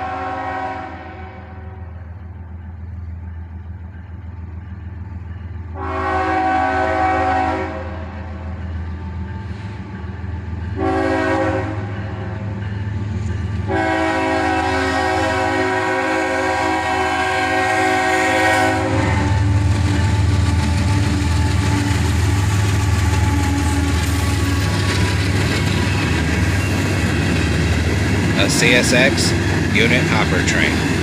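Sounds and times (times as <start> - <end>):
locomotive air horn: 0.0 - 1.9, 5.8 - 8.2, 10.8 - 12.0, 13.7 - 24.5
locomotive engine rumble: 0.0 - 31.0
train on rails: 0.0 - 31.0.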